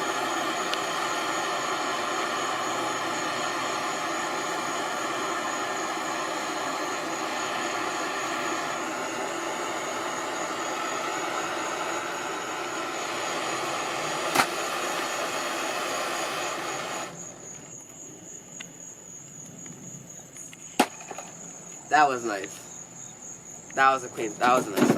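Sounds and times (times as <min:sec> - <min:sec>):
torch flame hissing: 0:00.0 - 0:17.8
crickets chirping: 0:00.0 - 0:24.9
sharp click: 0:14.3 - 0:14.6.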